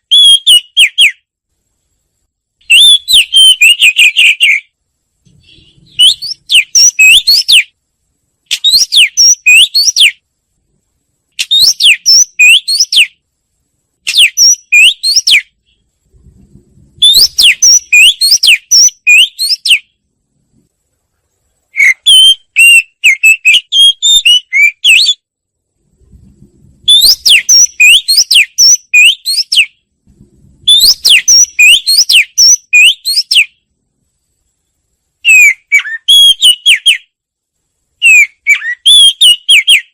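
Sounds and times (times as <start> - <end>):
bird twittering song: 0.0 - 1.3, 2.6 - 7.8, 8.5 - 10.2, 11.4 - 13.2, 14.1 - 15.9, 17.0 - 20.0, 21.7 - 25.2, 26.8 - 29.8, 30.7 - 33.7, 35.2 - 37.2, 38.0 - 39.9.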